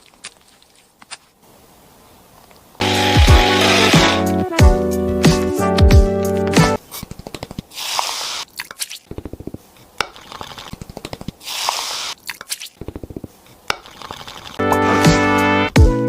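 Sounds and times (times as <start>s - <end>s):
short hiss: 7.7s - 8.5s, 11.4s - 12.2s.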